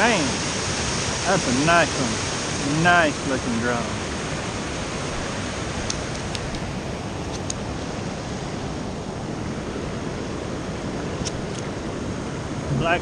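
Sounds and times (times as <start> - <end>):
water pouring over a dam: 0.0 - 5.1.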